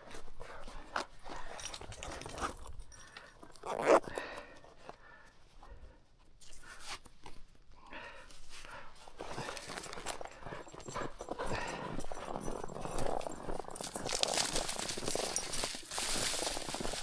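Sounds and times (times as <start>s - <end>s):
footsteps crunching in snow: 12.3s - 17.0s
rustling through dry reeds: 13.8s - 17.0s.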